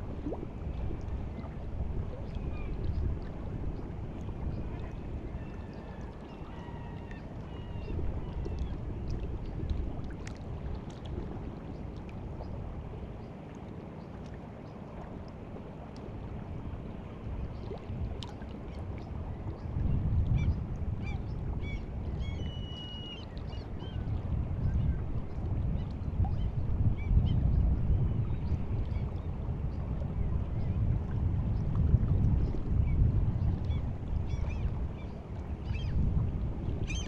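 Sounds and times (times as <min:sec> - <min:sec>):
sea water lapping at shore: 0:00.0 - 0:37.0.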